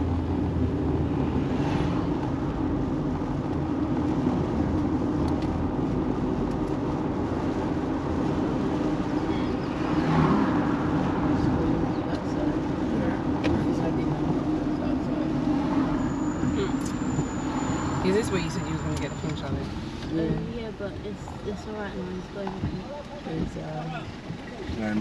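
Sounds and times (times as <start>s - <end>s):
car engine and road noise: 0.0s - 25.0s.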